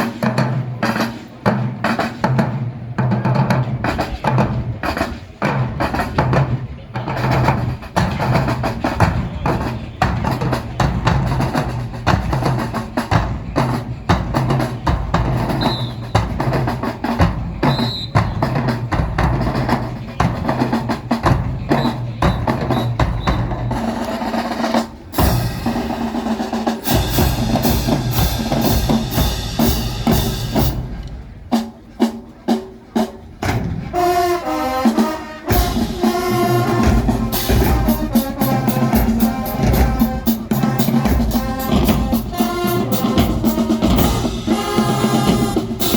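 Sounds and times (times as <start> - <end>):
snare and bass drum cadence: 0.0 - 45.9
wind instruments playing melody: 21.7 - 45.9.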